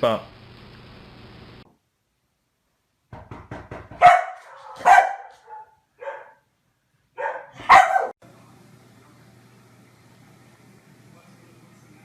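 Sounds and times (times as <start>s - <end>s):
dog barking: 4.0s - 6.5s, 7.2s - 8.2s.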